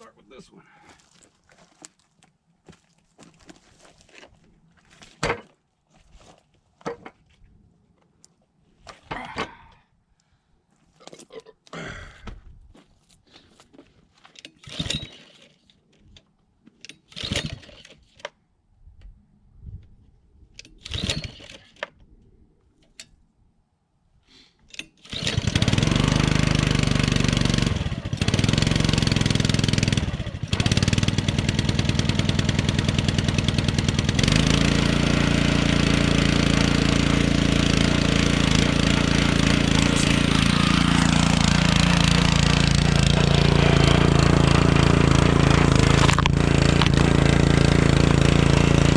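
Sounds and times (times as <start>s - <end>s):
short sharp starting noises: 14.6s - 15.5s, 20.8s - 21.8s, 25.0s - 48.9s
small gas engine running: 14.6s - 15.6s, 17.1s - 18.2s, 20.8s - 21.8s, 25.0s - 48.9s.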